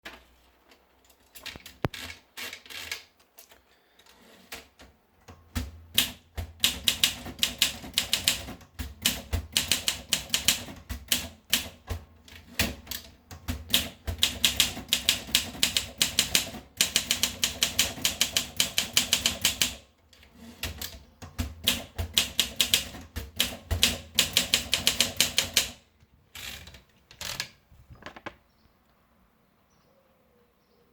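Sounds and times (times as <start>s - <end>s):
typewriter keystrokes: 5.4s - 19.8s, 20.6s - 25.8s.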